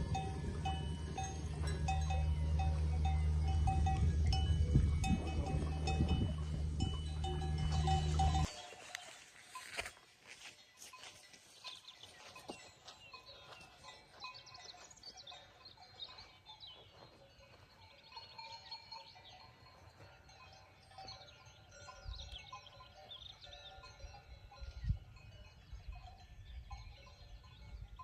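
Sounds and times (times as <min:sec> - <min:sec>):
bell-like ringing tones: 0:00.0 - 0:09.9.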